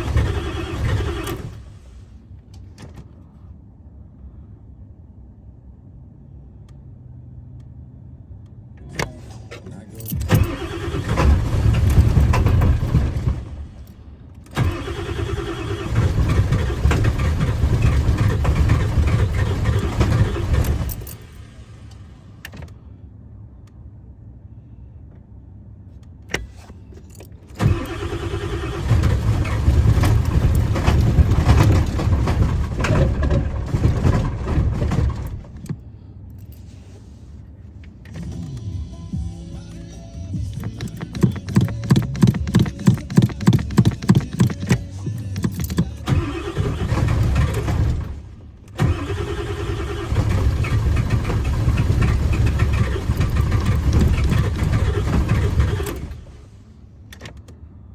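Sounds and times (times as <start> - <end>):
diesel engine cranking: 0.0 - 3.2, 8.8 - 22.9, 26.2 - 37.2, 39.6 - 57.6
starter click: 40.5 - 46.9.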